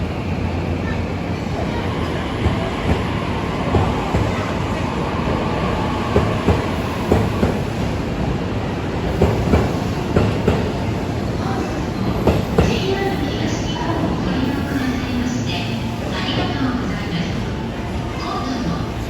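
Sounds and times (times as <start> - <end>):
train rumble: 0.0 - 19.0
train wheels clacking on rail joints: 6.1 - 7.7, 9.1 - 10.8.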